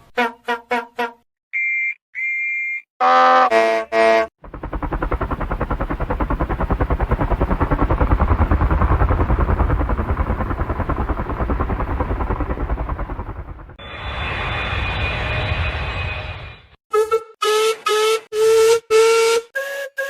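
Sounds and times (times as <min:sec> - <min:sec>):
helicopter rotor chopping: 0:04.4 - 0:14.0.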